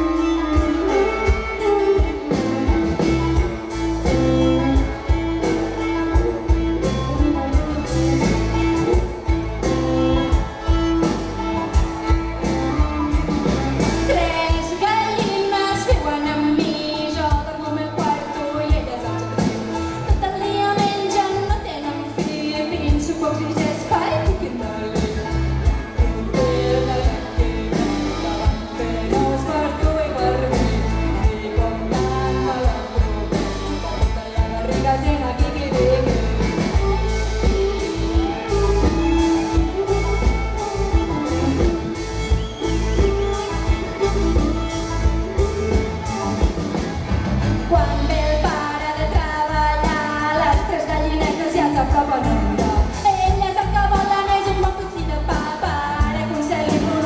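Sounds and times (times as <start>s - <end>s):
person singing: 0.0s - 46.8s
string band music: 0.0s - 57.0s.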